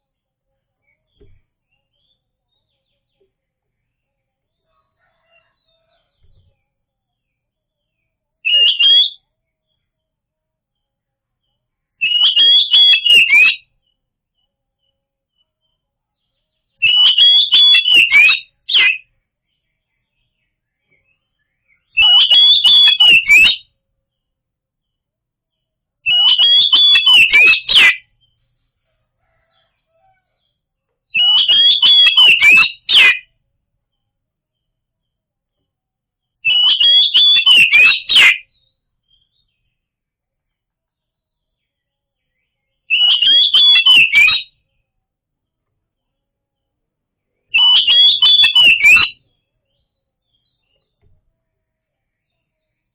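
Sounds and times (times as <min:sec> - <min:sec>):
bird chattering whistled song: 0:08.5 - 0:09.2, 0:12.0 - 0:13.7, 0:16.8 - 0:19.1, 0:20.9 - 0:23.7, 0:26.1 - 0:28.4, 0:31.1 - 0:33.3, 0:36.4 - 0:39.6, 0:42.4 - 0:44.6, 0:47.5 - 0:49.4.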